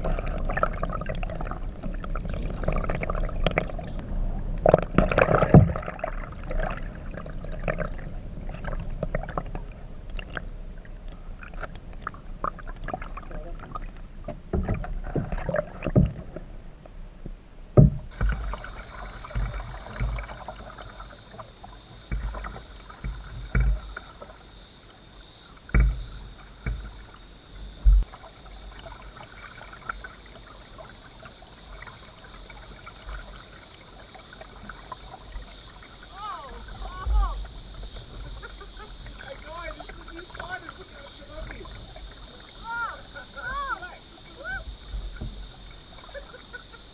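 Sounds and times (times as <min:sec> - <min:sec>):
paddle splashing water: 0:00.0 - 0:16.5, 0:17.8 - 0:46.9
paddle knocking hull: 0:14.3 - 0:16.4, 0:17.7 - 0:24.5, 0:25.6 - 0:29.8, 0:31.2 - 0:46.9
dull thumps: 0:17.8 - 0:20.7, 0:22.0 - 0:24.1, 0:25.7 - 0:27.1
cicada chorus: 0:18.1 - 0:46.9.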